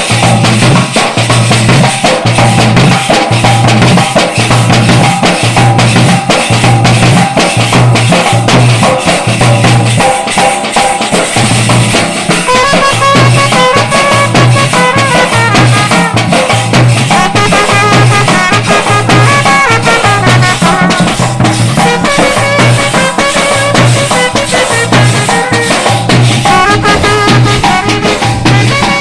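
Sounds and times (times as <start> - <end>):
drums and cymbals beat: 0.0 - 29.0
brass horns playing melody: 12.3 - 29.0.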